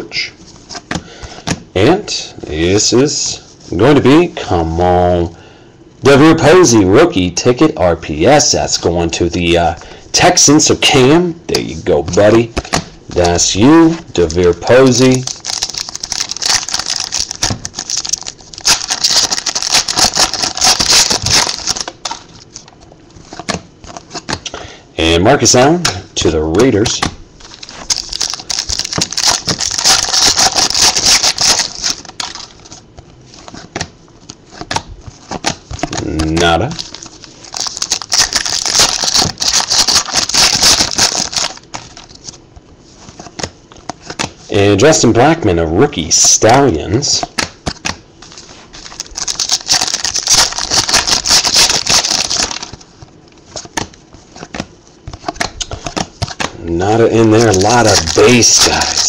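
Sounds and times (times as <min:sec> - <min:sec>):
cards sliding and flipping: 0:00.5 - 0:01.6, 0:26.6 - 0:44.4, 0:49.6 - 0:56.5, 0:57.1 - 0:59.0
wrapper crinkling and tearing: 0:13.2 - 0:24.1, 0:27.4 - 0:32.8, 0:35.8 - 0:42.4, 0:48.3 - 0:52.9, 0:55.2 - 0:59.0
cards flipping clicks: 0:14.2 - 0:22.7, 0:47.2 - 0:48.0, 0:53.5 - 0:56.5.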